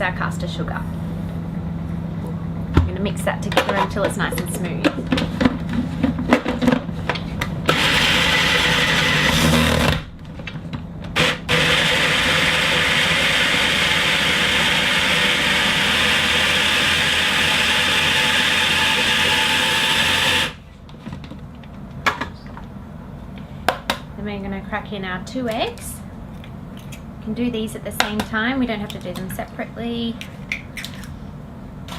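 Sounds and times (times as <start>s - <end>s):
food processor motor running: 7.7s - 10.1s, 11.2s - 20.6s.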